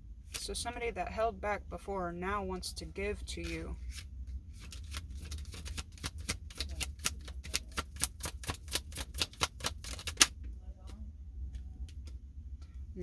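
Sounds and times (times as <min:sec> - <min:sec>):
cards being shuffled: 0:03.4 - 0:10.3.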